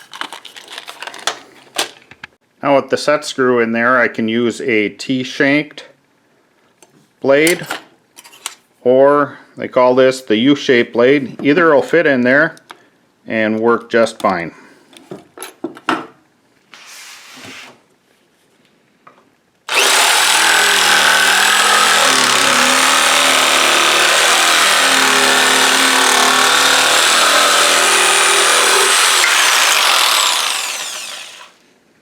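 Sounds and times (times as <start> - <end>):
jigsaw running: 19.7 - 31.6.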